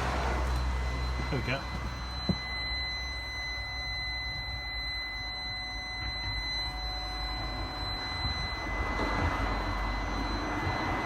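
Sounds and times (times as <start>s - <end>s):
passing traffic rumble: 0.0s - 3.3s, 7.0s - 11.0s
high-pitched whine: 0.0s - 11.0s.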